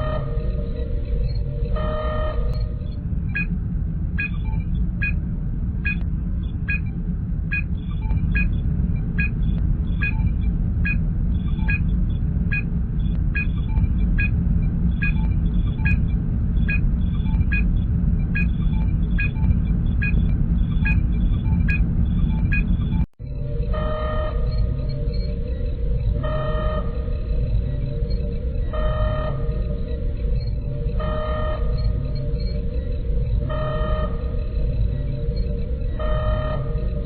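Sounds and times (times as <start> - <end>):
low engine hum: 0.0 - 37.0
electronic scanner beep: 33.4 - 37.0.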